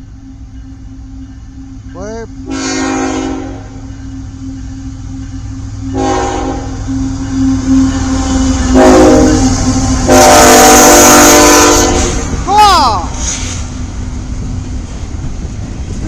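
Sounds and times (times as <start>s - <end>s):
locomotive air horn blasts: 2.4s - 3.8s, 5.9s - 12.4s.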